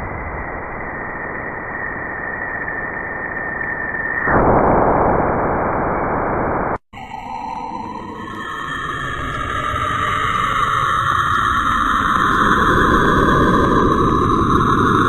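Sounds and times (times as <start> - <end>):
radio static hiss: 4.2 - 6.8.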